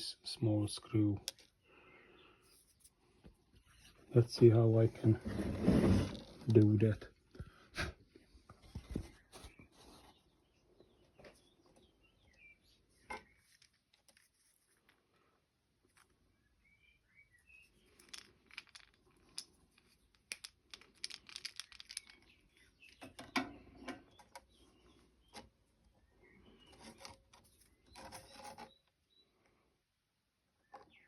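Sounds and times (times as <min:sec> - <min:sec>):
faint bird chirps: 0:08.8 - 0:13.6, 0:16.3 - 0:18.0, 0:21.9 - 0:29.7, 0:30.5 - 0:31.0
plastic parts clicking and rattling: 0:17.8 - 0:24.6.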